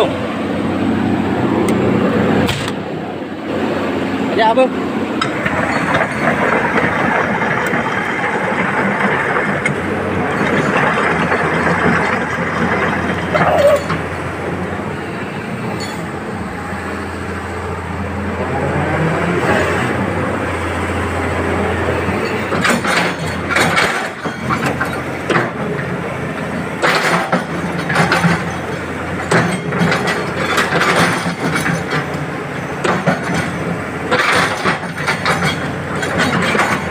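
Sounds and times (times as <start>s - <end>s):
diesel engine humming: 0.0s - 36.9s
metal clanks and knocks: 5.2s - 14.2s, 22.1s - 32.2s, 32.8s - 36.9s.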